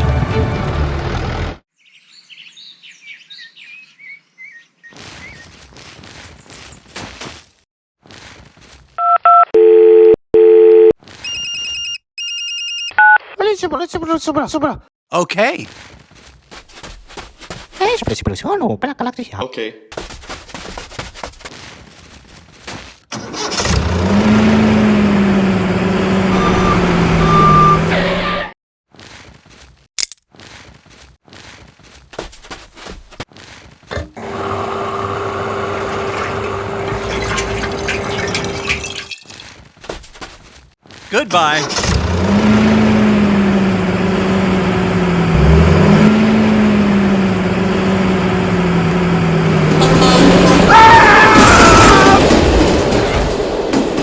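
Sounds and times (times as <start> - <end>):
small motor running: 34.1 - 38.9.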